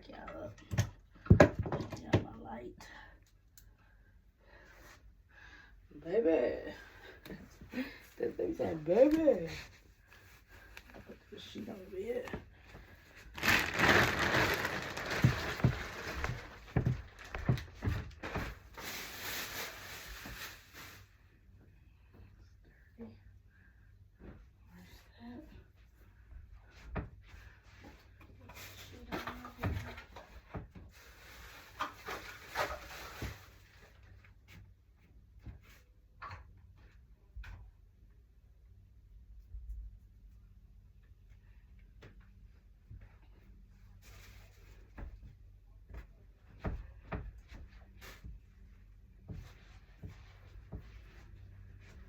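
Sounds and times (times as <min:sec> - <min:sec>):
bedsheet fabric rustling: 0:13.1 - 0:21.2.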